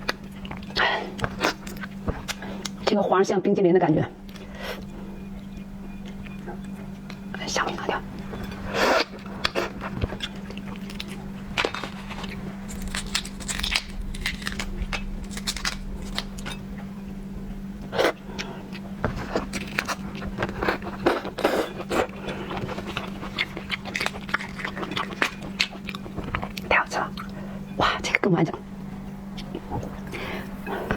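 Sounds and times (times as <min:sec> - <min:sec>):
low hum: 0:00.0 - 0:30.9
shellfish shell cracking: 0:10.2 - 0:16.6.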